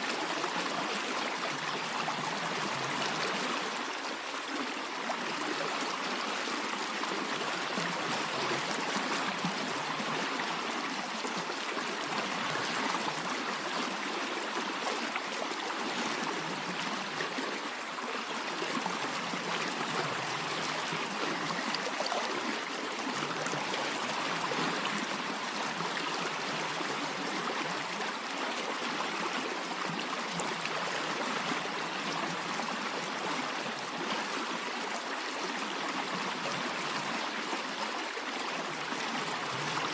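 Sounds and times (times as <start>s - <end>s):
stream of water flowing: 0.0s - 39.9s.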